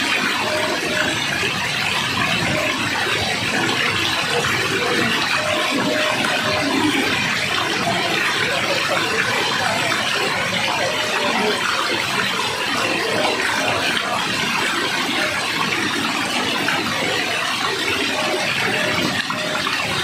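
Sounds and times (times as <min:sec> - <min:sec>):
rush of falling water: 0:00.0 - 0:20.0.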